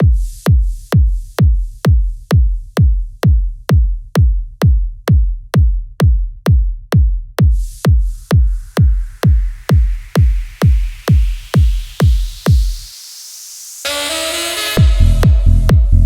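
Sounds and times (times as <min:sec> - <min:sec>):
techno kick drum: 0:00.0 - 0:13.0, 0:14.6 - 0:16.0
high hiss: 0:09.5 - 0:14.8.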